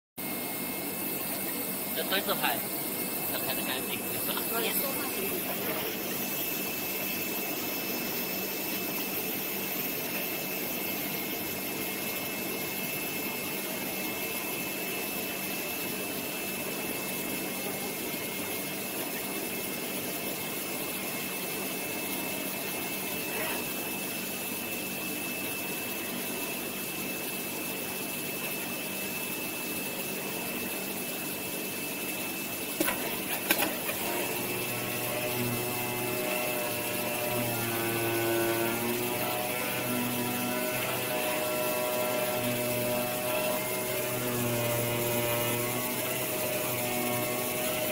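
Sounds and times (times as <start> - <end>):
cutting machine whirring: 0.2 - 11.2, 32.8 - 47.9.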